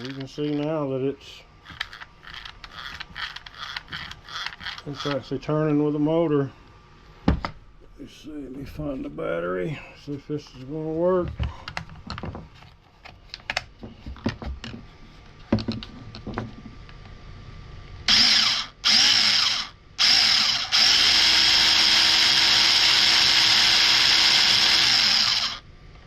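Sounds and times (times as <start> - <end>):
handling clicks and knocks: 15.5 - 16.7
electric chainsaw whining: 18.1 - 25.6.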